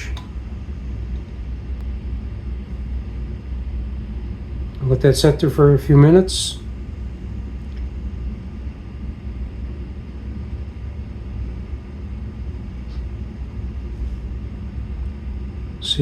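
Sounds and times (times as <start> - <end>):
machinery rumble and hum: 0.0 - 16.0.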